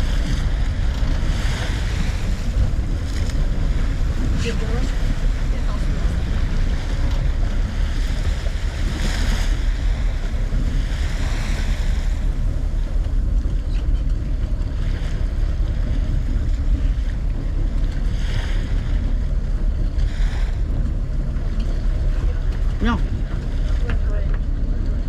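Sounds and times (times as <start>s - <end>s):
water rushing against boat: 0.0s - 25.0s
wind buffeting microphone: 0.0s - 25.0s.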